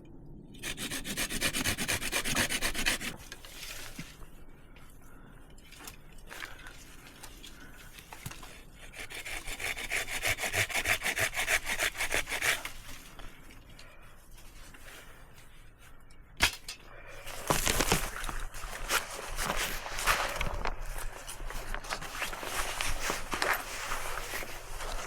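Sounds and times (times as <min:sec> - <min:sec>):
hand saw rasping: 0:00.6 - 0:03.2, 0:08.8 - 0:12.8
rustling: 0:17.1 - 0:25.0.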